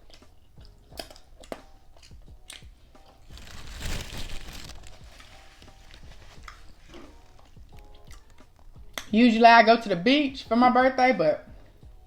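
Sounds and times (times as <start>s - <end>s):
crunching crispy fried food: 1.0s - 8.7s
crinkling: 3.0s - 8.7s.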